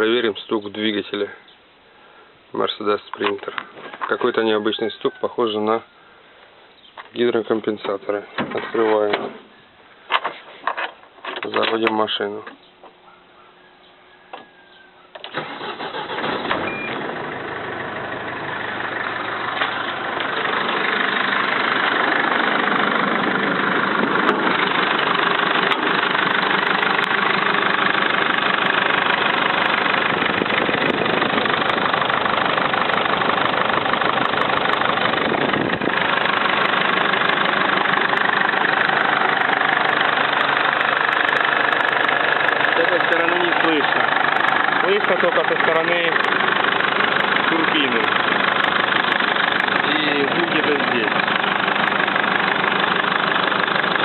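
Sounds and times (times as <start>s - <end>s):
van engine starting and idling: 15.2s - 54.0s
engine knocking: 18.0s - 54.0s.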